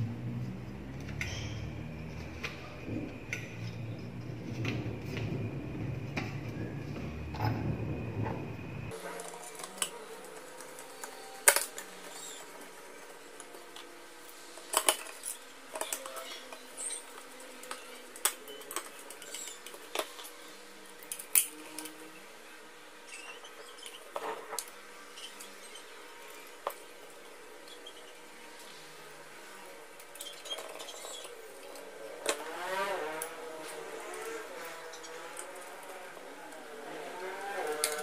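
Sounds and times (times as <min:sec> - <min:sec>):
small parts and tools clicking: 0:08.9 - 0:22.0, 0:29.9 - 0:38.0.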